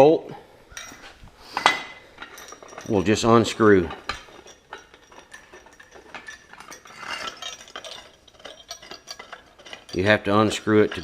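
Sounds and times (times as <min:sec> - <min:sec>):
wrench clicking and clinking: 0:02.2 - 0:11.0.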